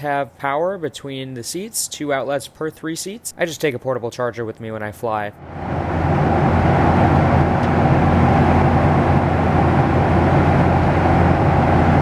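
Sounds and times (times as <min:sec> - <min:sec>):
low steady hum: 0:05.2 - 0:12.0
jet engines and airflow rush: 0:05.4 - 0:12.0.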